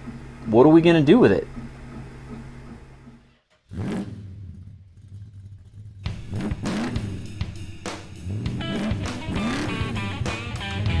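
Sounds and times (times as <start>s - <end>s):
steady drum beat: 6.0s - 11.0s.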